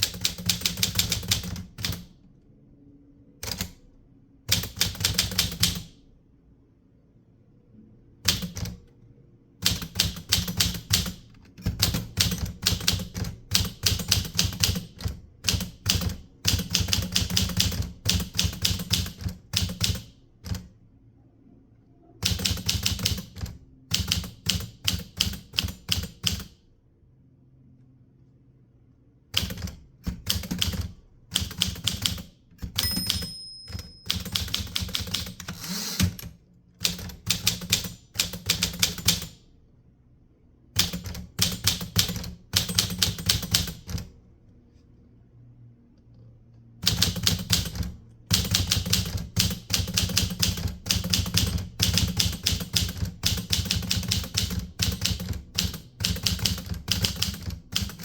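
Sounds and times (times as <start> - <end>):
typewriter keys striking: 0.0 - 2.1, 4.5 - 5.9, 8.3 - 8.8, 9.6 - 20.7, 22.2 - 26.5, 29.4 - 39.4, 40.8 - 44.1, 46.8 - 58.0
typewriter bell ring: 32.7 - 35.5, 42.6 - 43.4.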